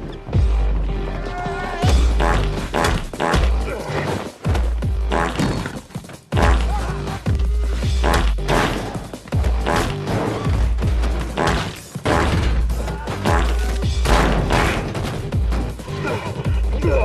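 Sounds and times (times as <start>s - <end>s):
loud music with heavy bass beat: 1.7s - 3.8s, 6.3s - 14.5s
blows thuds and crashes: 8.0s - 16.0s.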